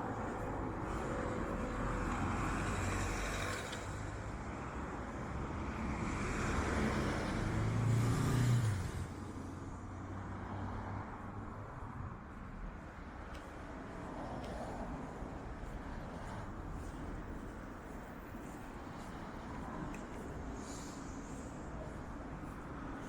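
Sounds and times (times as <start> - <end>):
traffic noise: 0.0 - 23.0
vehicle passing close by: 5.9 - 9.6.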